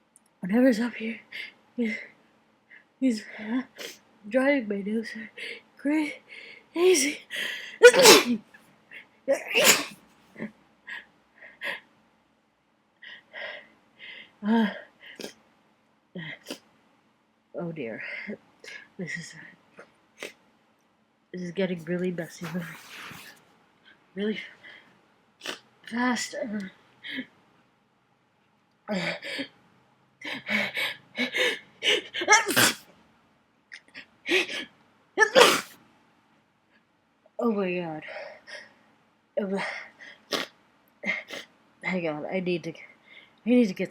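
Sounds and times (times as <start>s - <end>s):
person sneezing: 7.8s - 8.4s, 9.4s - 10.0s, 22.4s - 23.3s, 31.9s - 32.9s, 35.2s - 35.8s, 40.3s - 40.5s.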